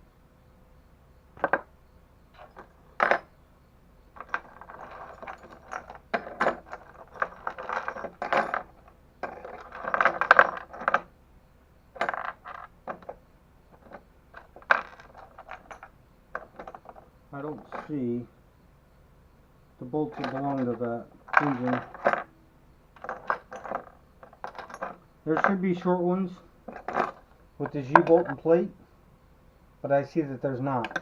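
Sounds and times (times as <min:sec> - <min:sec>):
small metal hardware clinking: 0:02.4 - 0:03.4, 0:04.2 - 0:11.1, 0:12.0 - 0:18.1, 0:20.0 - 0:22.4, 0:23.0 - 0:25.9, 0:26.7 - 0:28.4, 0:30.8 - 0:31.0.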